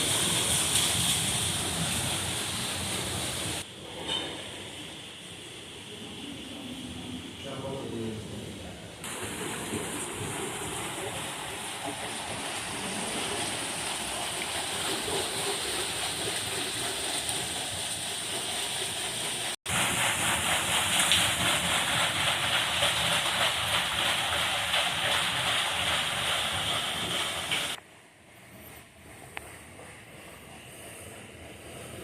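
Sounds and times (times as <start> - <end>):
flowing water rushing: 0.0 - 3.7, 9.0 - 27.8.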